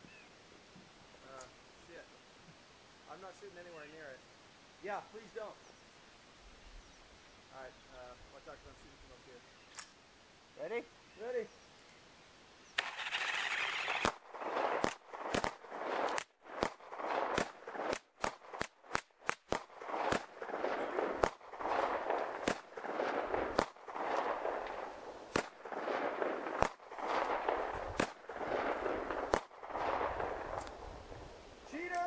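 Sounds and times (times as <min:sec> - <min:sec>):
sharp gunshots: 0:12.8 - 0:30.8.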